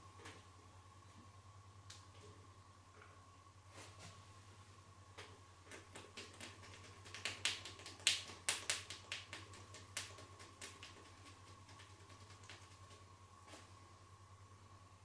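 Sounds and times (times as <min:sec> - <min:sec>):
faint electrical hum: 0:00.0 - 0:15.0
hands clicking and tapping in massage: 0:05.2 - 0:13.0.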